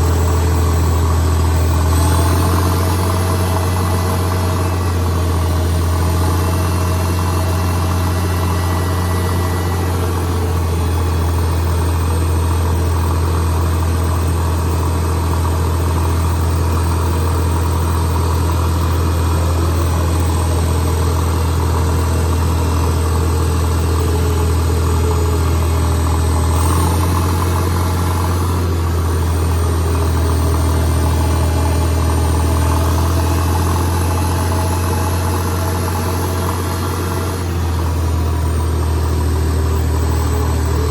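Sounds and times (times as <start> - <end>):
diesel engine droning: 0.0 - 40.9.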